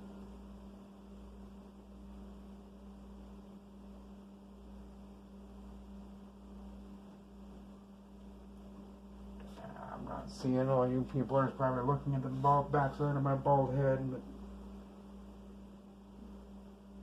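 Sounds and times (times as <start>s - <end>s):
faint background hiss: 0.0s - 17.0s
low electrical hum: 0.0s - 17.0s.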